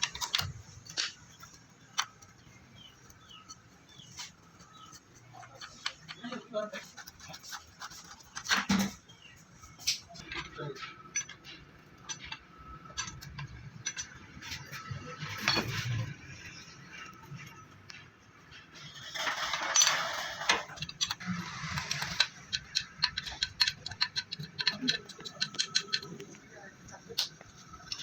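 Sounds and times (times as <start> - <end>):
metal tools clinking: 9.8 - 16.1, 19.2 - 26.4.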